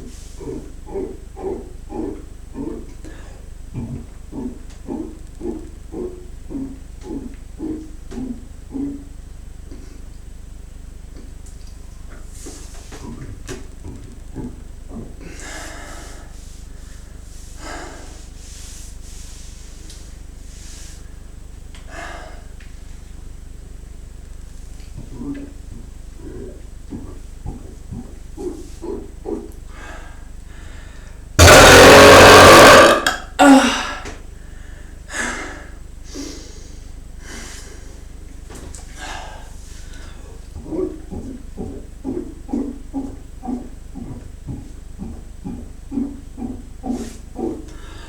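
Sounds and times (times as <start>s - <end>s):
noisy breaths: 0.0s - 10.6s, 12.2s - 23.8s, 26.2s - 31.5s, 33.6s - 48.0s
steady low hum: 0.0s - 48.0s
breaths: 3.0s - 3.6s, 15.2s - 23.2s, 29.7s - 31.4s, 33.4s - 38.2s, 38.8s - 40.4s, 46.9s - 48.0s
man belching: 31.4s - 33.8s.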